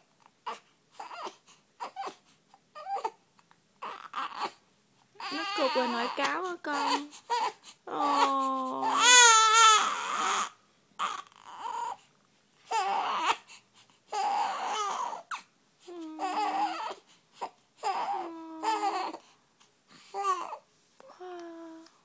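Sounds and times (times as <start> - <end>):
baby crying: 0.4 - 3.2, 3.8 - 4.6, 5.2 - 12.0, 12.7 - 19.2, 20.1 - 20.6.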